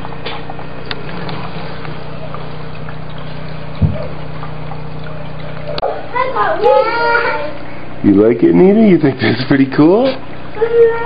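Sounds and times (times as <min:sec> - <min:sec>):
pump hum: 0:00.0 - 0:11.0
water pouring: 0:00.0 - 0:11.0
low thump: 0:03.8 - 0:04.0.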